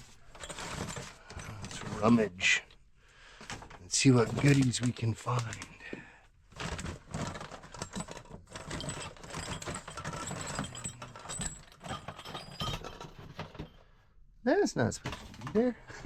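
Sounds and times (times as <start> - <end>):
metal fittings clattering: 7.1 - 13.8.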